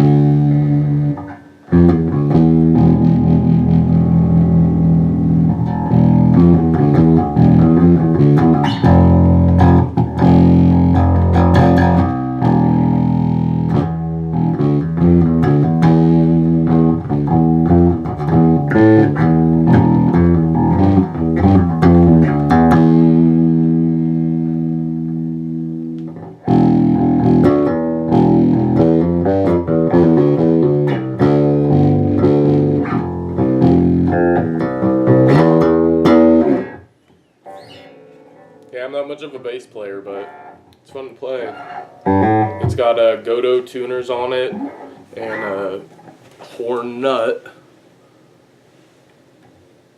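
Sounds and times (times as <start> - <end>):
electric bass plucked notes: 0.0 - 39.4, 40.1 - 43.5.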